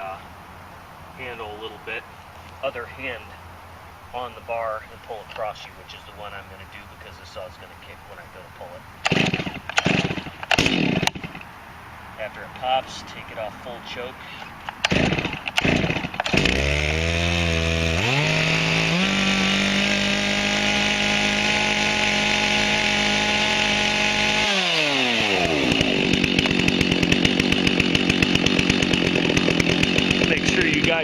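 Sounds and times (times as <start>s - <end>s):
chainsaw idling: 9.0s - 11.5s, 14.2s - 31.0s.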